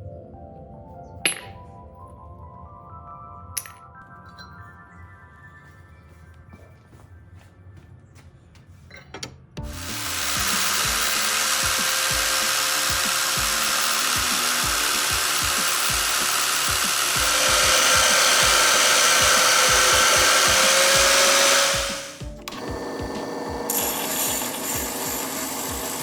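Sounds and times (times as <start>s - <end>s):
power tool grinding metal blade: 9.6s - 26.0s.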